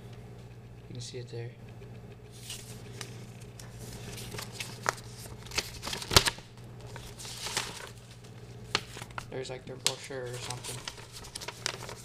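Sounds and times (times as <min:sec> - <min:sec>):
paper rustling: 0:02.3 - 0:12.0.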